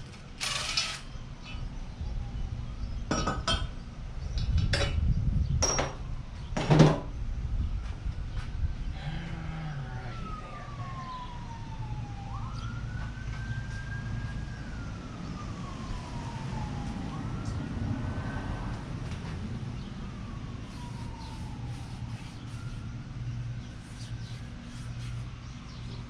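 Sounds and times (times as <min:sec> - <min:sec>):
emergency vehicle siren wailing: 0:01.3 - 0:03.0, 0:09.0 - 0:26.0.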